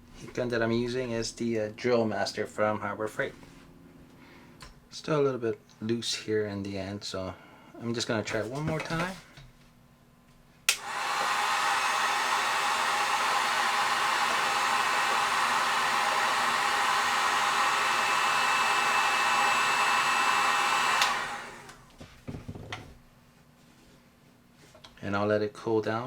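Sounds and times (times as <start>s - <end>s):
heat gun switch click: 10.7s - 11.4s, 20.9s - 21.8s
heat gun blowing: 10.7s - 21.9s.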